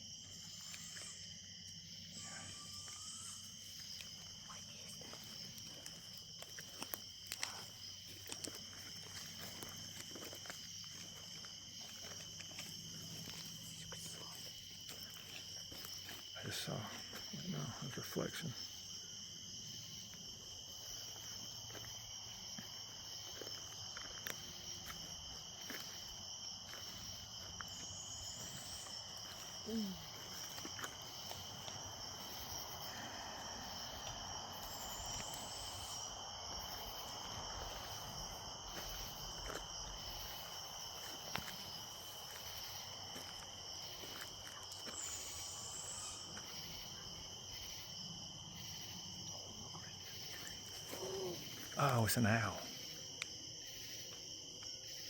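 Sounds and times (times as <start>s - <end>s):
crickets chirping drone: 0.0s - 55.0s.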